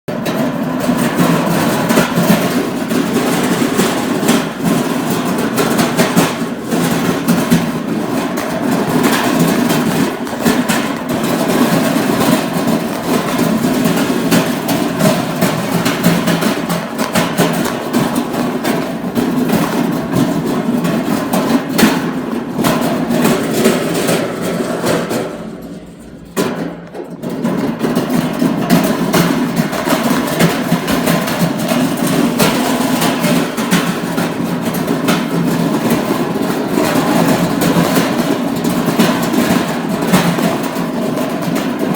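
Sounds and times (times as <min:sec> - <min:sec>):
shopping cart rattling: 0:00.1 - 0:41.9.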